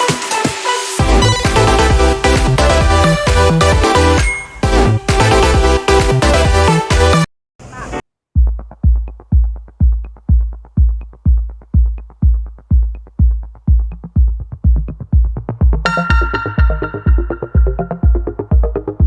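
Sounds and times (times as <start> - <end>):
bright synth melody: 1.0 - 6.7, 15.9 - 18.4
kick drum: 1.0 - 7.1, 8.4 - 19.0
light ticking hi-hat: 8.4 - 18.8.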